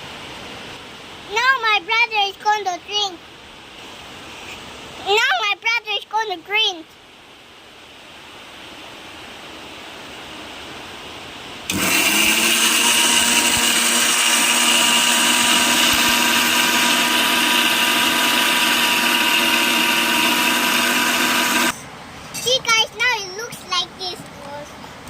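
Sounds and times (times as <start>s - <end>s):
electric blender running: 11.7s - 21.8s.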